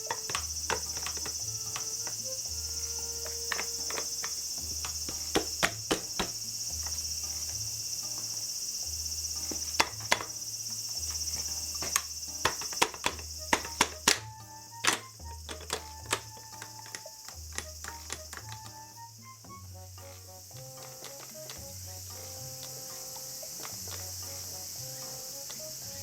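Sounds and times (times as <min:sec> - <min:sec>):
sharp clicks and taps: 0:00.0 - 0:08.3, 0:09.4 - 0:19.0
insects chirring: 0:00.0 - 0:26.0.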